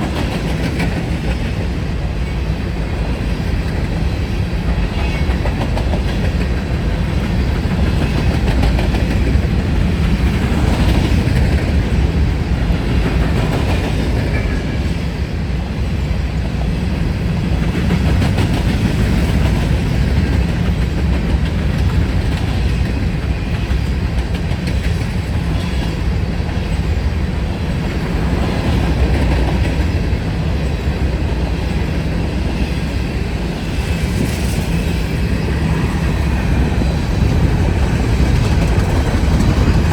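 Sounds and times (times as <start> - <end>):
train rumbling past: 0.0 - 39.9
wheels clacking over rail joints: 17.7 - 39.9.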